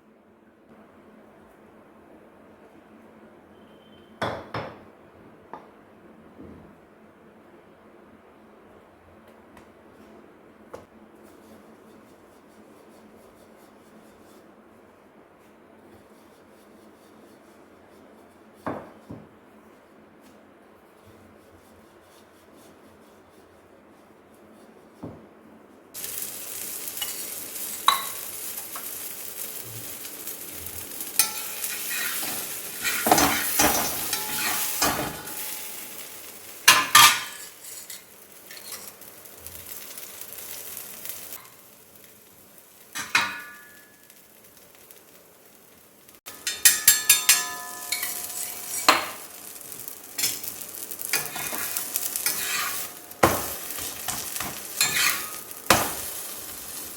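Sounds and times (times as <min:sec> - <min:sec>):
flatbread sizzling on a griddle: 0:15.8 - 0:18.9, 0:25.9 - 0:56.9
spatula scraping and tapping pan: 0:26.0 - 0:42.1, 0:42.7 - 0:45.2, 0:46.2 - 0:56.9.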